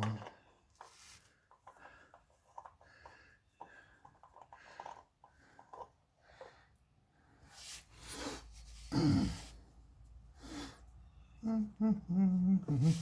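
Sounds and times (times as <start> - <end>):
small clicks and scrapes: 0.0 - 6.5.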